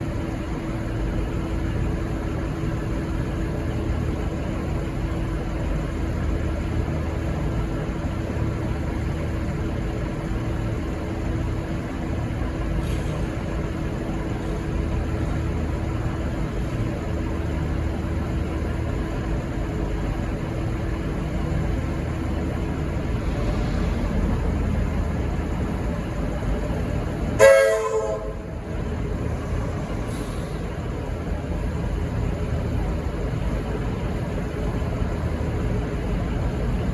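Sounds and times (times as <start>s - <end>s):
diesel locomotive rumbling: 0.0s - 36.9s
locomotive horn toot: 27.4s - 28.6s.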